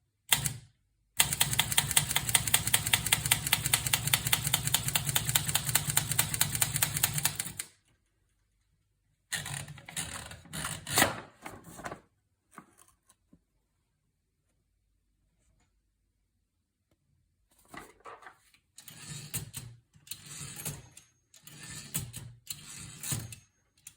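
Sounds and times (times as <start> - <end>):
typewriter typing: 0.3 - 0.6, 1.2 - 7.7.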